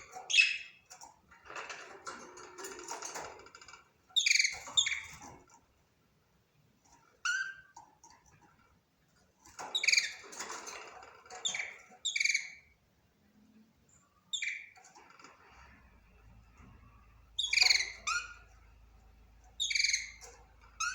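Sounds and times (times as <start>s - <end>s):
budgerigar chirping: 0.3s - 0.8s, 11.4s - 12.7s, 17.4s - 18.4s, 19.6s - 20.3s.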